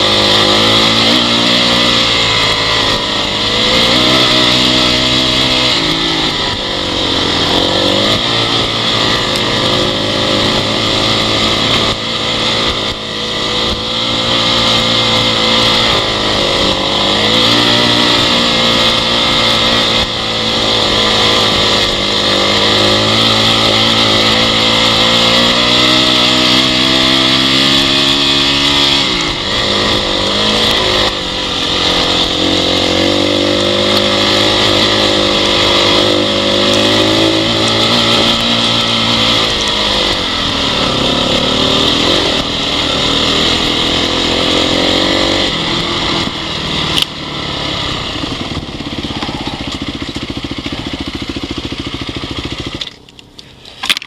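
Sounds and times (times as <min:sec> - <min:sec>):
dirt bike engine revving: 0:00.0 - 0:54.0
wind and riding noise: 0:00.0 - 0:54.0.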